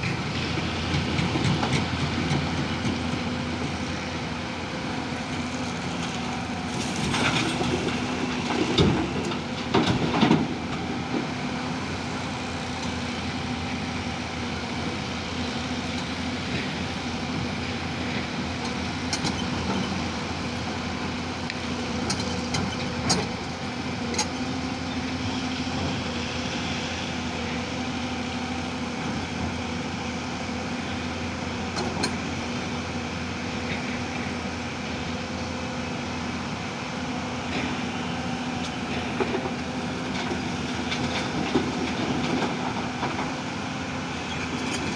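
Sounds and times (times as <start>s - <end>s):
digging machine engine running: 0.0s - 44.9s.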